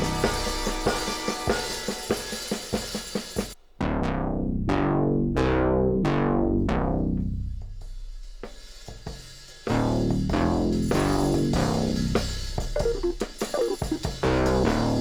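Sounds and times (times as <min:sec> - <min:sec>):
full band with drums: 0:00.0 - 0:03.6, 0:07.8 - 0:15.0.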